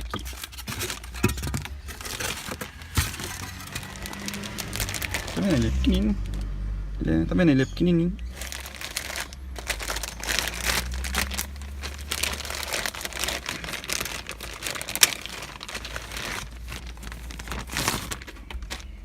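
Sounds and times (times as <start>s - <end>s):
plastic packaging crinkling: 0.0s - 6.5s, 8.2s - 19.0s.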